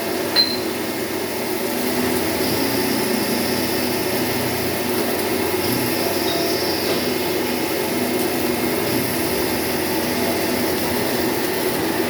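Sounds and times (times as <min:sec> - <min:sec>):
cnc machine humming: 0:00.0 - 0:12.0.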